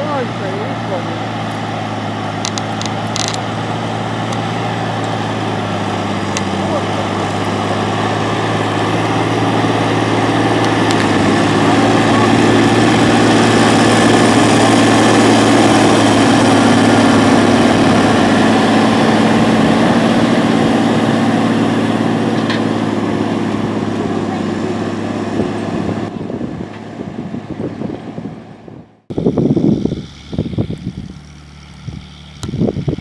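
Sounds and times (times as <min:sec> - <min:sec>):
rush of mechanical noise: 0:00.0 - 0:26.2
diesel engine running: 0:00.0 - 0:33.0.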